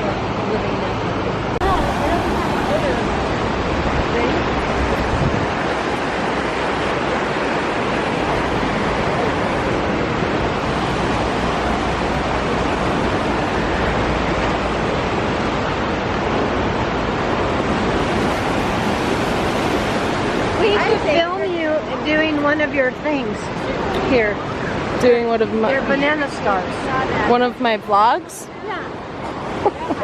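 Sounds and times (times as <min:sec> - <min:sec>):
river water rushing: 0:00.0 - 0:22.6.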